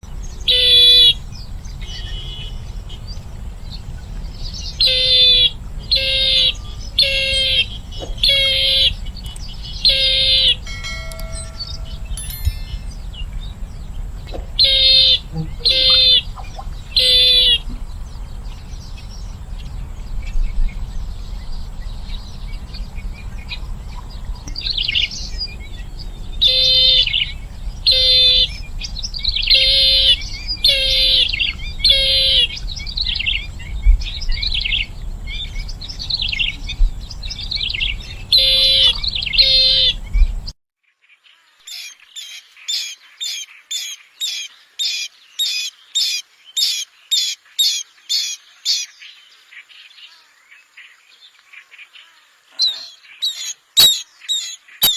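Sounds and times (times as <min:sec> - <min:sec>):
bird calling in pulsed calls: 0:00.4 - 0:01.2, 0:04.7 - 0:13.6, 0:14.2 - 0:17.8, 0:23.5 - 0:40.1, 0:52.6 - 0:54.9.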